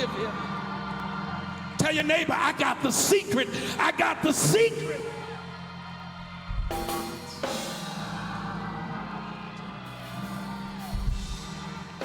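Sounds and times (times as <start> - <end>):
church band music: 0.0 - 12.0
drum kit and cymbals: 6.4 - 8.9, 9.9 - 12.0.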